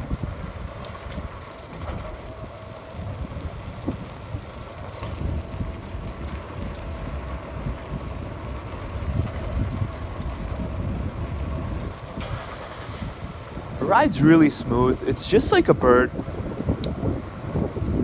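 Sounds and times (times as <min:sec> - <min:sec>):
road and tyre rumble: 0:00.0 - 0:18.0
wind buffeting microphone: 0:00.0 - 0:18.0.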